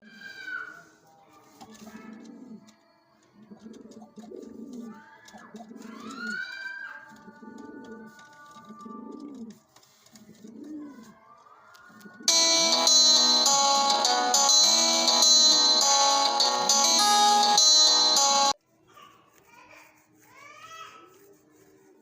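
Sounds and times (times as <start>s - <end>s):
pigeon cooing: 1.7s - 2.8s, 3.4s - 6.4s, 7.1s - 11.1s, 11.9s - 12.4s
higher gliding chirps: 12.3s - 18.6s
loud music: 12.3s - 18.6s.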